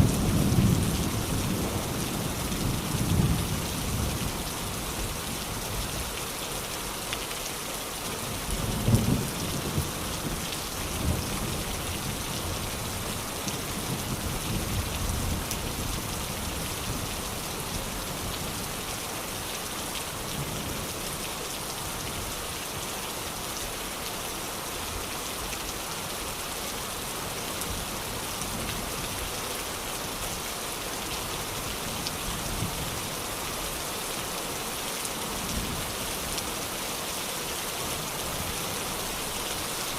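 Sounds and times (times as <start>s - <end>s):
rain pattering on surfaces: 0.0s - 39.9s.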